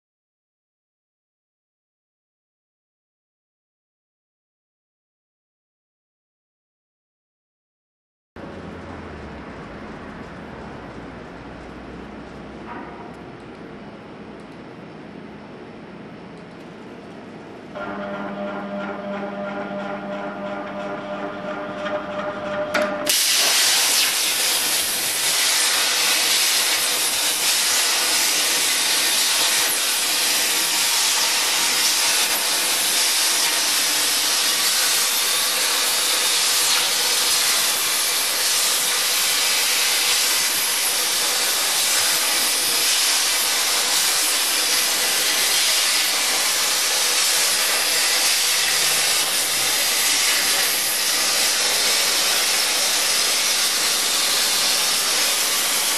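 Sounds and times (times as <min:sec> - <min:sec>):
plasma torch arc hissing: 0:23.0 - 0:55.9.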